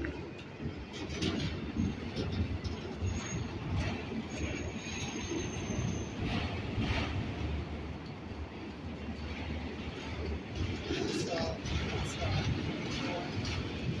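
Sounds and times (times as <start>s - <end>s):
freight train rumbling: 0.0s - 14.0s
train cars clanking: 0.0s - 14.0s
high wheel squeal: 2.9s - 6.8s.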